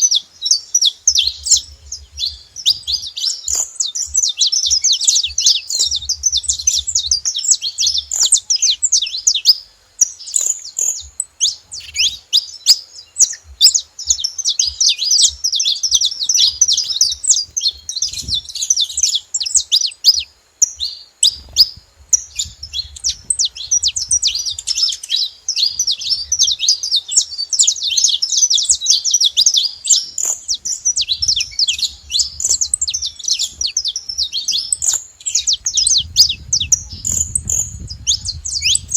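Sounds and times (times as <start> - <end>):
finch chirping rapidly: 0.0 - 38.9.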